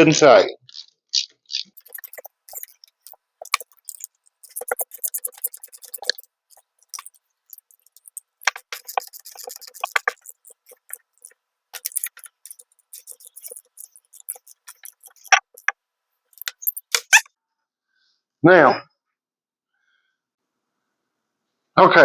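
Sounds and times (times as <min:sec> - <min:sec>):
ratchet wrench clicking: 0:01.8 - 0:15.7, 0:16.4 - 0:17.2.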